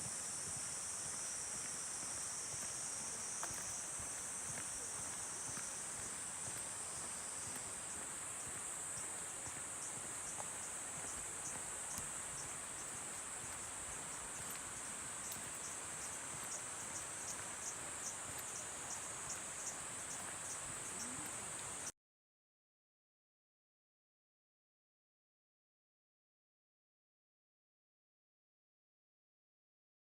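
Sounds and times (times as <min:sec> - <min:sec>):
insect chirping: 0:00.0 - 0:21.9
insects droning high-pitched: 0:00.0 - 0:21.9
stream water: 0:00.0 - 0:21.9.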